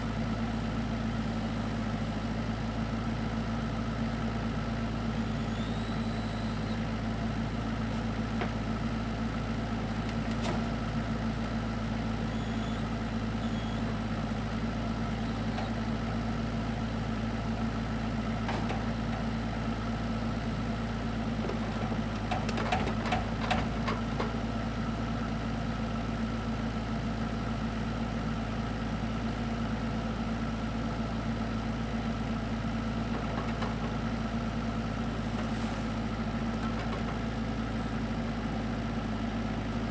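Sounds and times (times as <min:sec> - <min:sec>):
diesel engine idling: 0:00.0 - 0:39.9.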